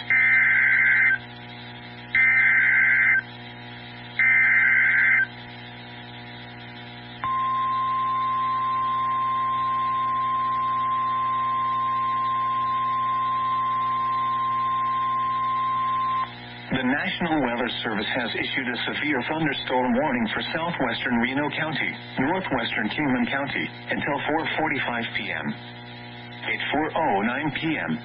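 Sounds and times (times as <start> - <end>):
steady alarm tone: 0.0 - 1.2, 2.1 - 3.2, 4.2 - 5.3, 7.2 - 16.5
warbling data tones: 0.0 - 1.4, 2.1 - 3.4, 4.2 - 5.4.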